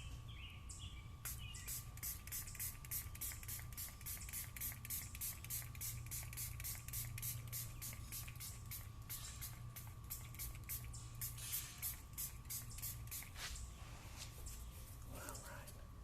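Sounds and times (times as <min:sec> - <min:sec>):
spray bottle hissing sprays: 0:01.3 - 0:13.6.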